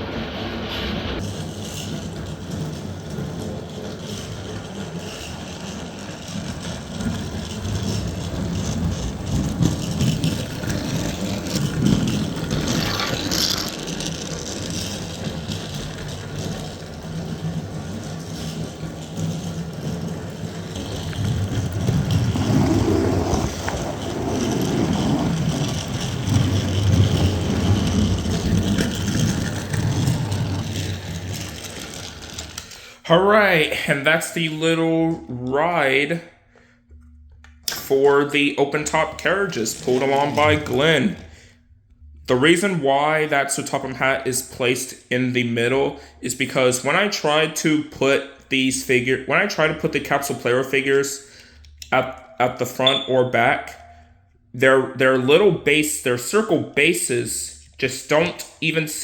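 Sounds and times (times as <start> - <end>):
toy train motor whirring: 1.2 - 22.4, 23.4 - 33.0
toy train wheels rattling: 1.2 - 33.0, 38.8 - 41.3.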